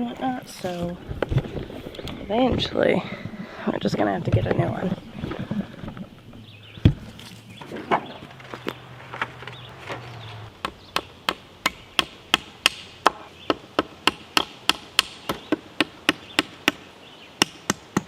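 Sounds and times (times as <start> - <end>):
low hum: 4.9 - 11.0.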